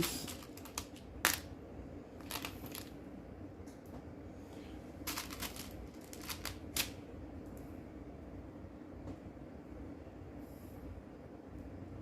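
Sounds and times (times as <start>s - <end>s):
plastic bricks clicking together: 0.0s - 1.5s, 5.1s - 6.9s.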